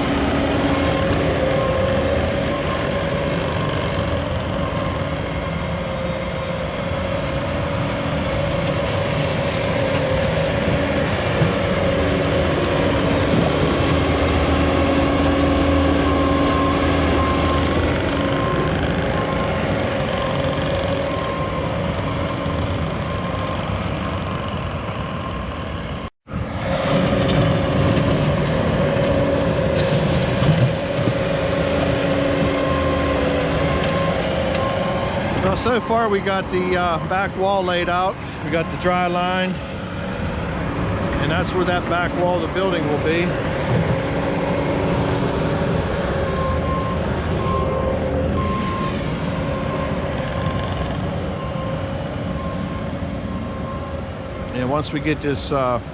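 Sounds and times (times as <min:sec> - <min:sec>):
engine running with whine: 0:00.0 - 0:55.9.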